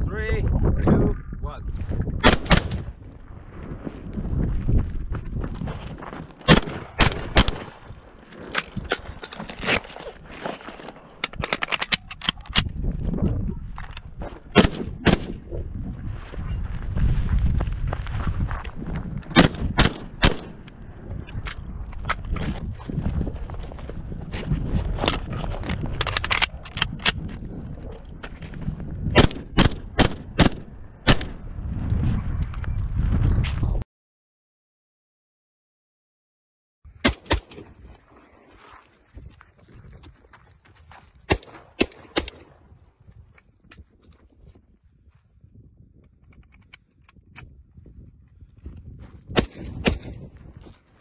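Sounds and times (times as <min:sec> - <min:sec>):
rifle shots: 0:02.2 - 0:02.9, 0:06.5 - 0:07.8, 0:14.5 - 0:15.4, 0:19.3 - 0:20.6, 0:29.2 - 0:31.4.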